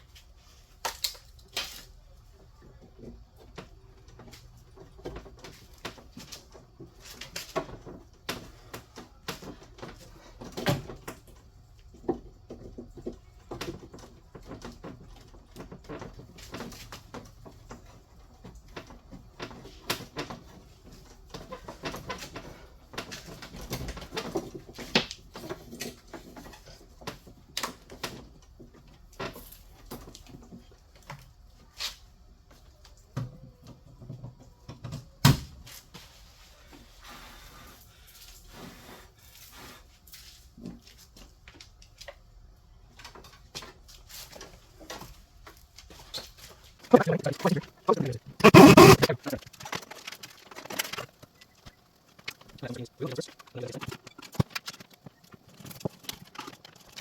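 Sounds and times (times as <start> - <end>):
small parts and tools clicking: 48.4 - 57.0.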